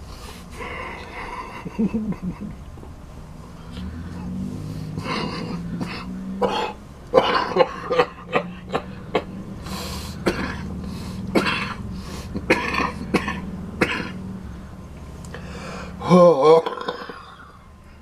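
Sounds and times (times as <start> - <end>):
man coughing: 5.0 - 9.3, 10.2 - 10.6, 11.4 - 11.8, 12.4 - 14.2.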